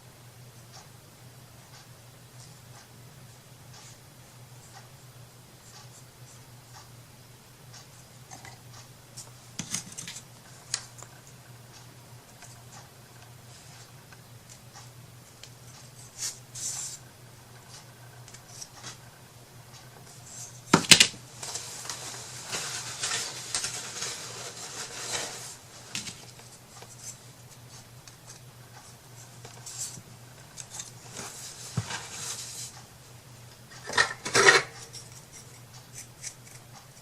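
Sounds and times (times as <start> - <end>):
steady low hum: 0.0 - 37.0
rustling and rubbing: 15.7 - 19.1, 21.3 - 32.9.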